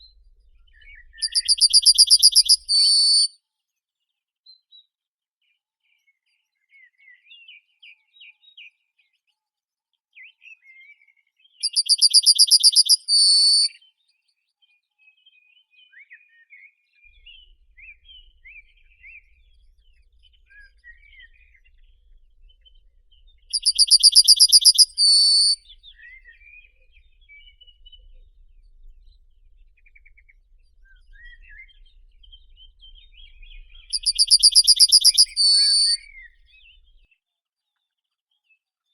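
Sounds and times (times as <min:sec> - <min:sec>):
faint bird chirps and whistles: 0:00.0 - 0:03.3, 0:10.2 - 0:14.0, 0:15.0 - 0:37.0
bird trilling high notes: 0:01.2 - 0:03.3, 0:11.8 - 0:13.7, 0:23.5 - 0:25.6, 0:33.9 - 0:36.1.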